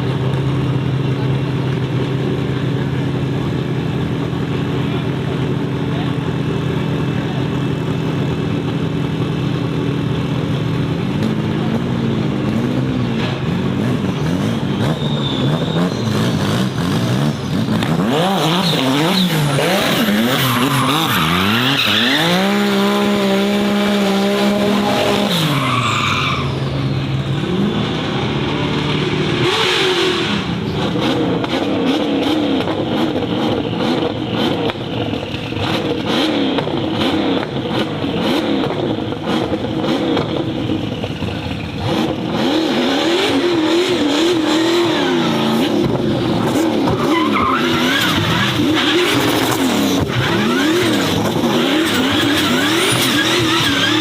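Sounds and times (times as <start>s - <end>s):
race car engine revving: 0.0s - 54.0s
tyres squealing: 18.4s - 22.5s, 25.1s - 27.1s, 46.4s - 51.2s.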